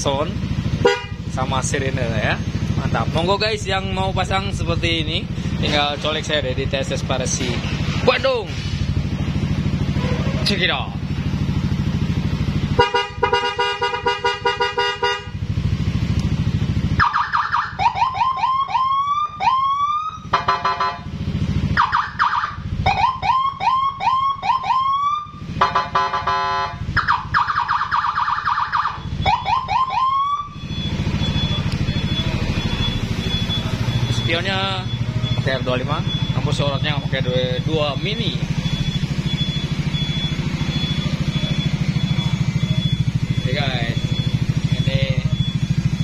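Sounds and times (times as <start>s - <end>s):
scooter engine idling: 0.0s - 46.0s
electronic siren whooping: 16.8s - 46.0s.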